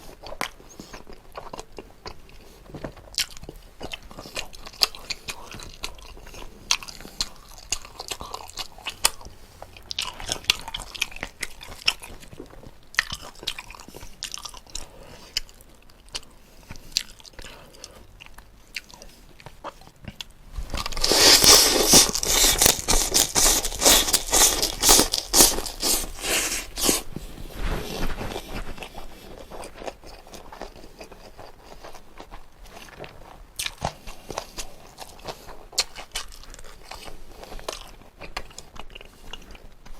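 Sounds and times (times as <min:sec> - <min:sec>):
person chewing: 0:00.0 - 0:39.9
rapid crunching: 0:20.6 - 0:39.7.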